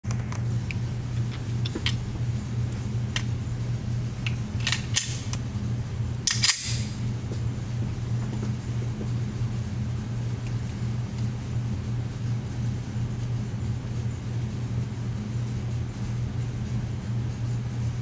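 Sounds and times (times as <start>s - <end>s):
pistol action clicking: 4.3s - 5.4s, 6.3s - 7.0s.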